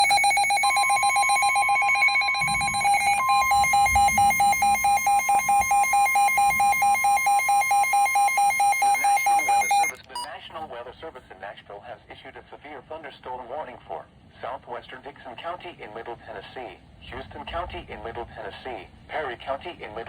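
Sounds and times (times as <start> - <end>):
fast pulsing beep: 0.0 - 10.3
steady high alert tone: 0.0 - 10.3.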